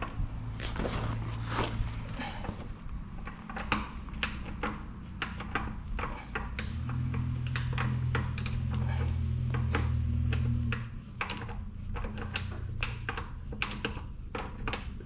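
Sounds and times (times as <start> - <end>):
steady low hum: 0.0 - 15.0
tools clicking and tapping: 3.0 - 15.0.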